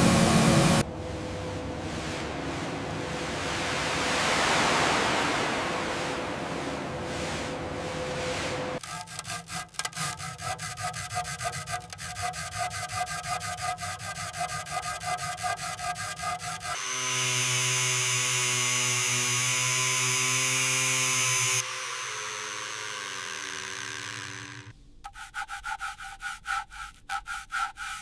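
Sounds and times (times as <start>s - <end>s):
hand filing strokes: 8.8s - 28.0s
power sander whining: 16.0s - 24.7s.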